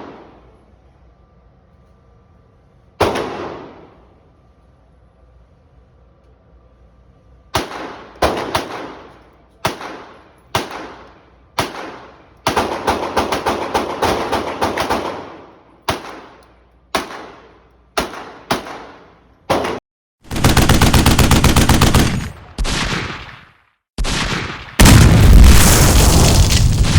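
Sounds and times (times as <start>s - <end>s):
gunshots: 3.0s - 4.0s, 17.0s - 26.9s
rapid gunfire bursts: 19.5s - 23.4s.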